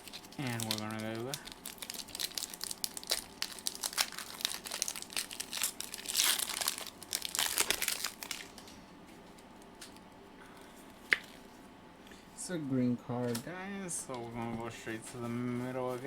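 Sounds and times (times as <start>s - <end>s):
foil wrapper crinkling: 0.0s - 8.8s.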